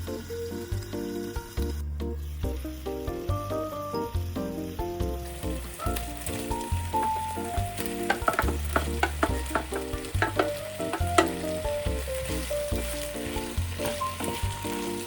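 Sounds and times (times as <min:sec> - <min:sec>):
background music: 0:00.0 - 0:15.0
food sizzling in a pan: 0:00.0 - 0:15.0
utensil clicking against a pan: 0:05.3 - 0:15.0.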